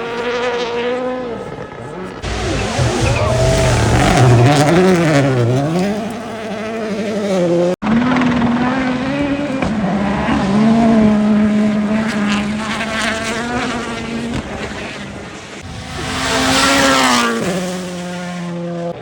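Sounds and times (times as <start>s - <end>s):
rally car engine revving: 0.0s - 19.0s
tyre and stone noise: 2.2s - 6.2s.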